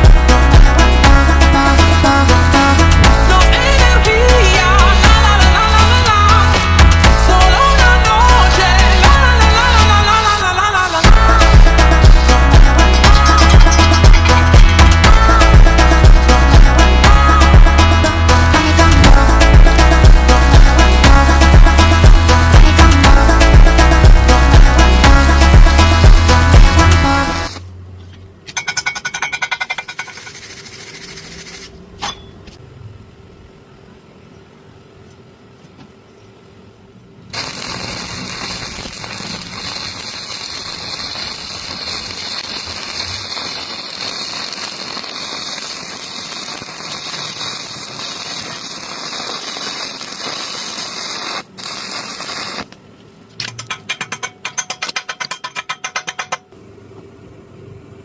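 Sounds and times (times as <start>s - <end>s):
arc welding hiss: 0.0s - 27.6s, 37.3s - 52.8s.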